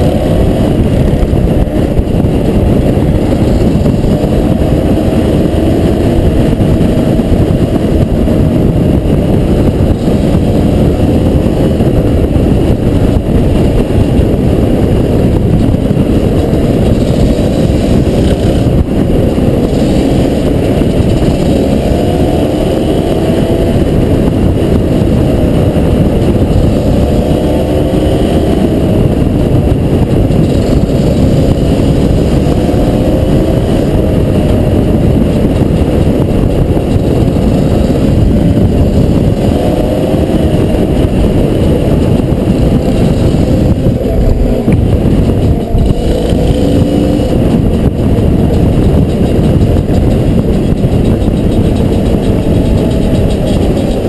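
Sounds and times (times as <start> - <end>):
dirt bike engine revving: 15.5 - 54.0.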